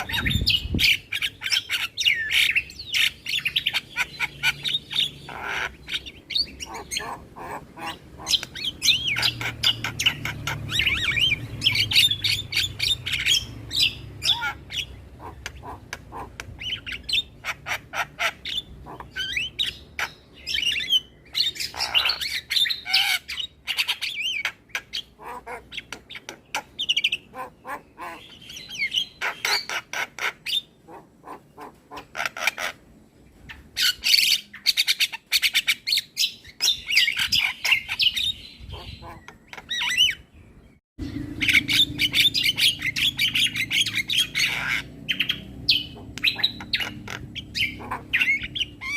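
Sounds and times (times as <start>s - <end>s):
myna bird singing: 0.0s - 48.9s.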